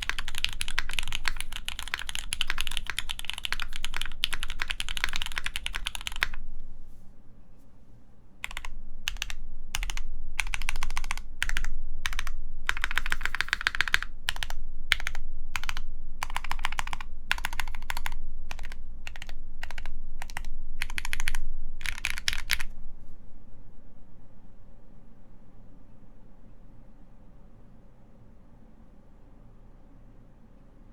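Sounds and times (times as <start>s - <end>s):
typing on mechanical keyboard: 0.0s - 6.4s, 8.4s - 22.7s.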